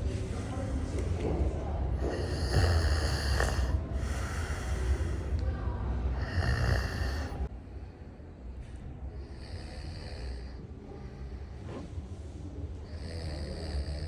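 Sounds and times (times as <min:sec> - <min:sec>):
person snoring: 0:02.0 - 0:05.3, 0:06.2 - 0:07.5, 0:09.2 - 0:10.6, 0:12.9 - 0:14.0.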